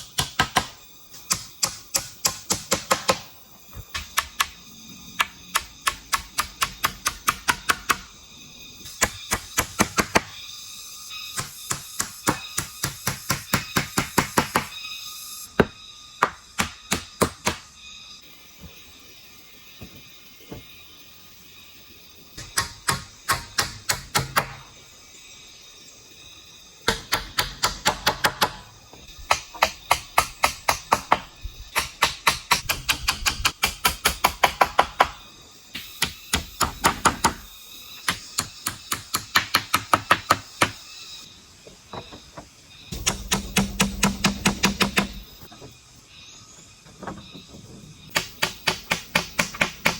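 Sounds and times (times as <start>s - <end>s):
tool knocking on bamboo: 43.0s - 45.3s.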